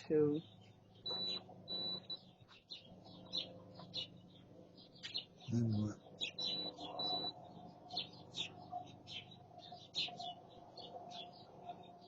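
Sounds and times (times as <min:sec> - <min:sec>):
faint steady hum: 0:00.0 - 0:12.0
small birds chirping: 0:00.0 - 0:12.0.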